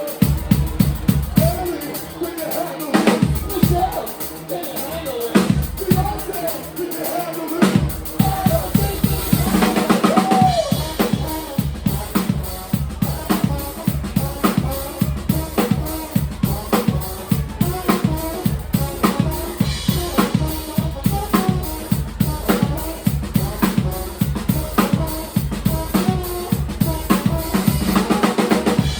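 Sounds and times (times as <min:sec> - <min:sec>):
bass drum and snare beat: 0:00.0 - 0:28.9
live band music: 0:00.0 - 0:28.9
low bass line: 0:00.2 - 0:01.8, 0:07.8 - 0:28.9.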